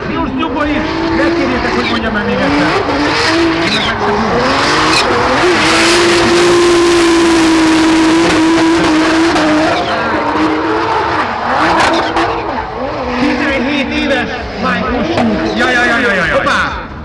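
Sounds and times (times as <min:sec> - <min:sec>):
tyres squealing: 0:00.0 - 0:16.2
car engine at high revs: 0:00.0 - 0:17.0.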